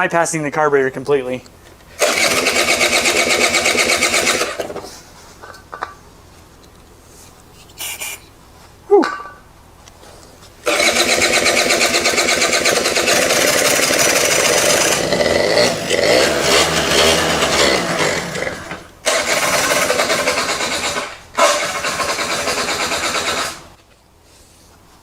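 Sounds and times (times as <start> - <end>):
scooter engine cranking on starter: 2.0 - 4.8, 10.6 - 23.8.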